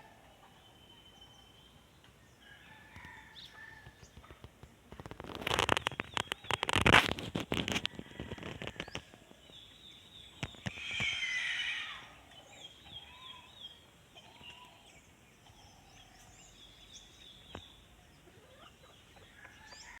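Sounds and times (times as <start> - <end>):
parrot harsh call: 10.7 - 12.3.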